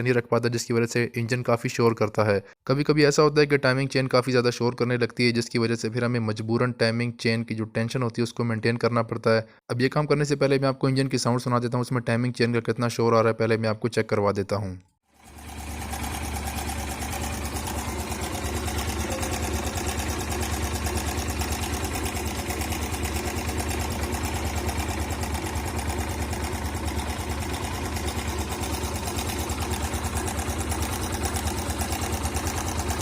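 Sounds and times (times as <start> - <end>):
motorcycle engine idling: 15.2 - 33.0.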